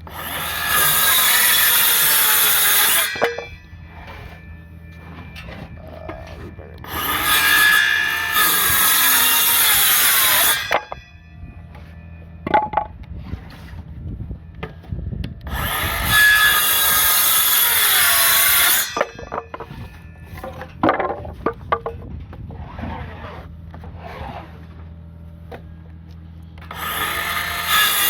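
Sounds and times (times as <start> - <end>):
circular saw cutting wood: 0.0 - 11.1, 15.5 - 20.5, 26.6 - 28.0.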